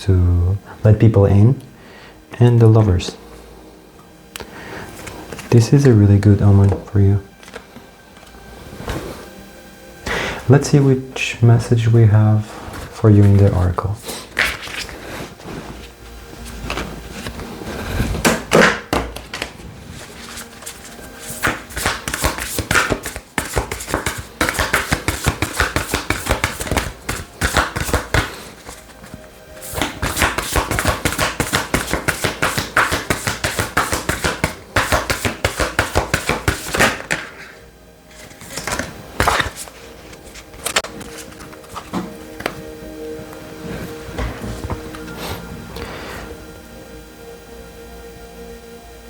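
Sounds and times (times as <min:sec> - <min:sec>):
soft background music: 0:00.0 - 0:49.0
cards being shuffled: 0:05.0 - 0:09.4, 0:12.5 - 0:45.4.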